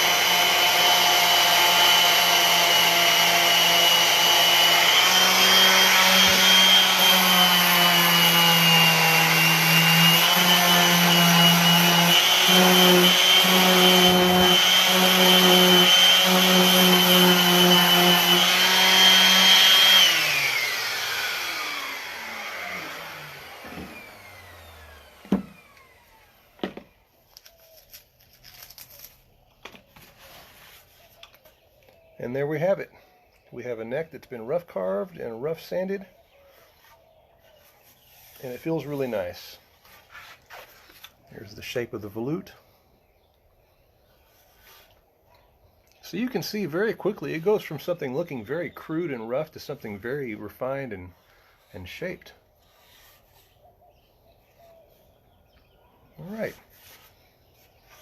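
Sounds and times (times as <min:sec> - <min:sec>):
power sander on wood: 0:00.0 - 0:26.9, 0:37.6 - 0:40.4.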